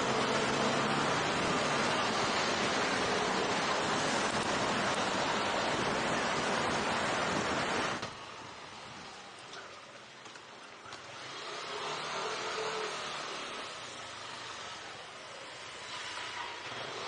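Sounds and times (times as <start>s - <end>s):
wind rushing over microphone: 0.3s - 9.1s.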